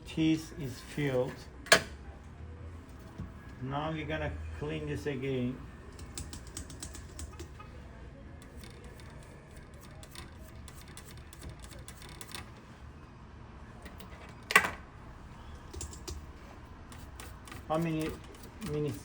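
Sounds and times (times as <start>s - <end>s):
small tools clicking and tapping: 5.9s - 7.6s, 15.7s - 16.2s.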